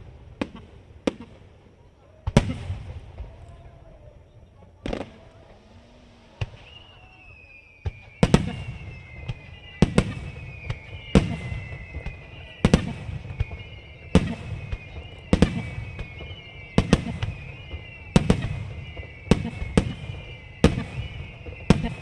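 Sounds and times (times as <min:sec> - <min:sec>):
firework shells bursting: 0:04.8 - 0:22.0
high whistling tones gliding down: 0:05.6 - 0:22.0.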